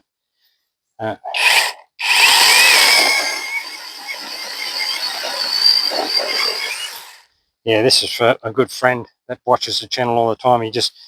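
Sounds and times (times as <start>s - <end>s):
chainsaw cutting into log: 1.4s - 7.3s.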